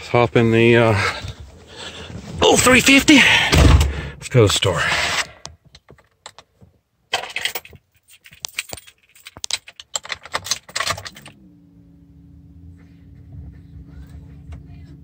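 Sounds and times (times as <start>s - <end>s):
truck engine starting and idling: 1.8s - 4.2s
keys jangling and clicking: 7.2s - 11.4s.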